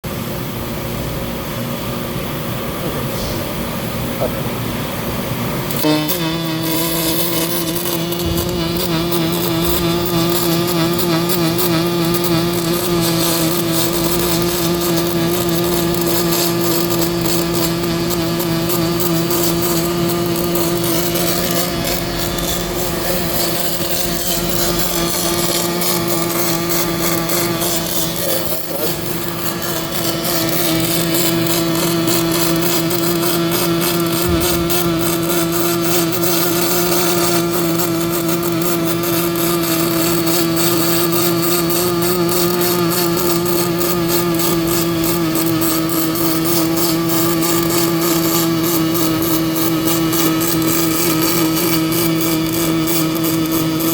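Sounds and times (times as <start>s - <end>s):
constant hum: 0.1s - 39.1s
welding arc crackling: 3.5s - 53.9s.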